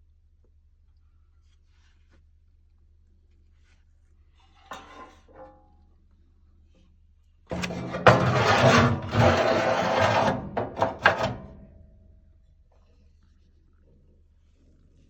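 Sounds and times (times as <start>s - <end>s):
hard objects scraping and clattering: 7.5s - 11.8s.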